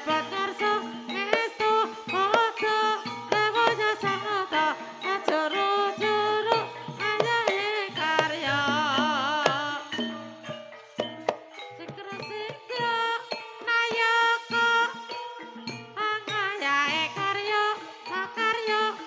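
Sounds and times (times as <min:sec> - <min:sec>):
drum strokes: 0:00.0 - 0:04.4, 0:05.0 - 0:12.9.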